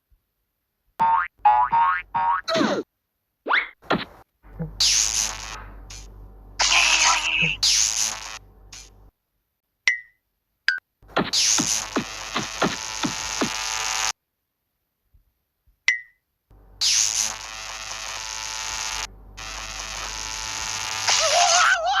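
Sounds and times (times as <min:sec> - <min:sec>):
electric buzzing: 0:04.5 - 0:09.1, 0:11.0 - 0:14.2, 0:16.5 - 0:22.0.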